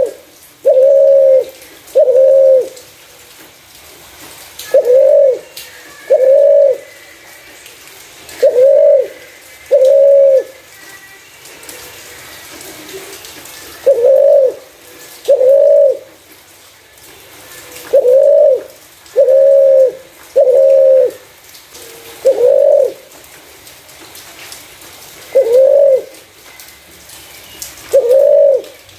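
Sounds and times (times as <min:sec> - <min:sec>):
dove cooing: 0:00.0 - 0:02.8, 0:04.6 - 0:07.4, 0:08.3 - 0:10.7, 0:12.5 - 0:16.2, 0:17.5 - 0:23.2, 0:25.3 - 0:26.2, 0:27.9 - 0:28.9.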